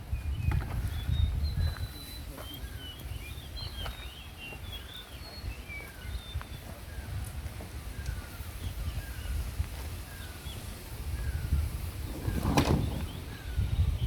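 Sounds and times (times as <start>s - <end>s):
birds chirping: 0.0s - 14.0s
loud rustle or knock: 12.1s - 13.3s.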